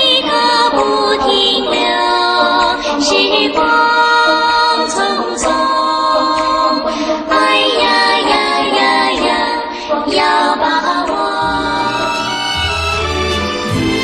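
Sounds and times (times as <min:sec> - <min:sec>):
slow song with sung melody: 0:00.0 - 0:14.0.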